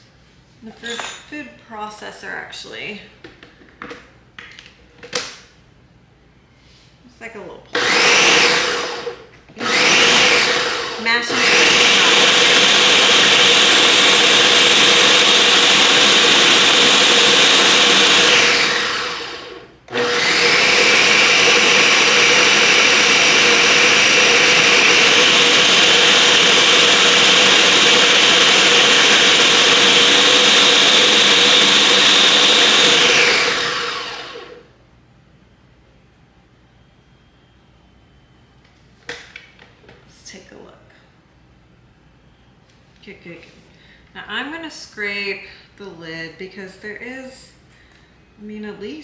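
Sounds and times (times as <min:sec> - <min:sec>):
food processor motor running: 0:07.8 - 0:34.6.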